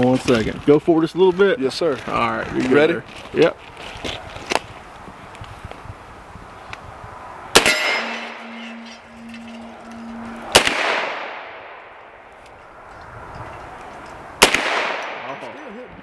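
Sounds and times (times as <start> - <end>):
rifle shots echoing: 7.5 - 8.4, 10.5 - 12.0, 14.4 - 15.5
steel target ringing: 7.6 - 11.9.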